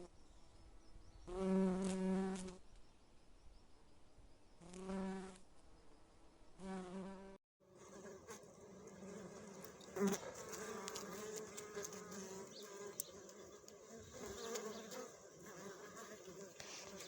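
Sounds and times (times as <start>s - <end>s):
bees buzzing: 7.7s - 17.0s.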